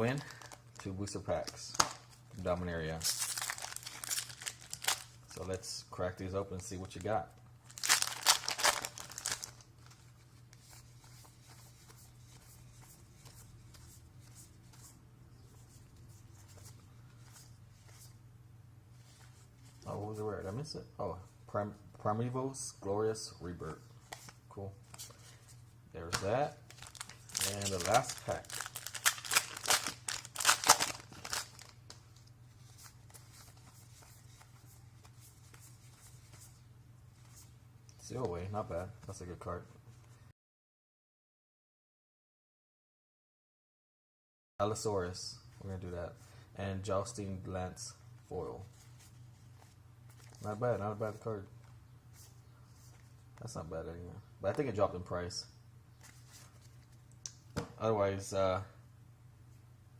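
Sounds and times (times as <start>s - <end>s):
cards rustling by hand: 0.0s - 5.6s, 6.2s - 18.2s, 24.0s - 36.6s, 48.4s - 53.4s, 56.0s - 57.2s
low steady hum: 0.0s - 40.3s, 44.6s - 59.9s
foil wrapper tearing and crinkling: 3.0s - 5.2s, 7.7s - 9.7s, 26.7s - 31.8s.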